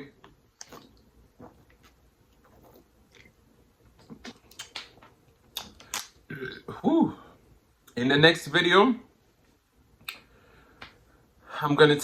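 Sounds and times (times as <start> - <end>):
person chewing food: 0.5 - 3.4
wet mouth clicks: 4.0 - 4.9.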